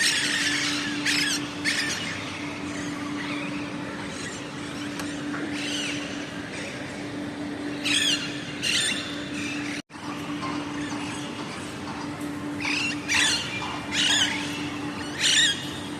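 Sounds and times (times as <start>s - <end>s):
parrots screeching: 0.0s - 6.7s, 7.8s - 9.8s, 12.6s - 15.8s
steady low hum: 0.0s - 15.9s.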